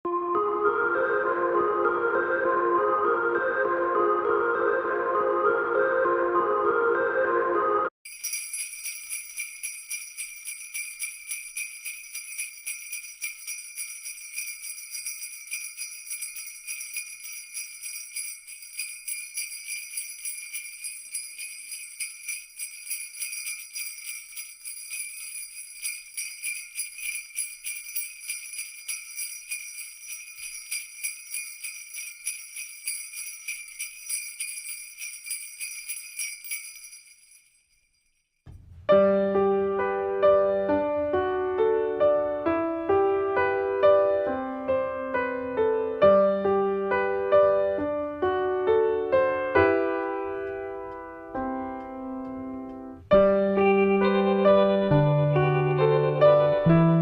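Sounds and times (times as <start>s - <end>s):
small bells jingling: 8.0s - 38.4s.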